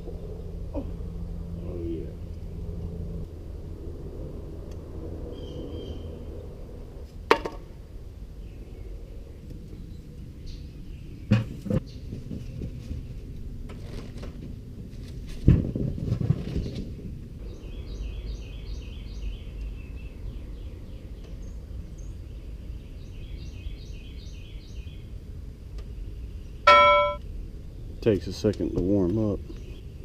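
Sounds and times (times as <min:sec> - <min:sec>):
steady low rumble: 0:00.0 - 0:07.1
songbird chirping: 0:25.8 - 0:27.2.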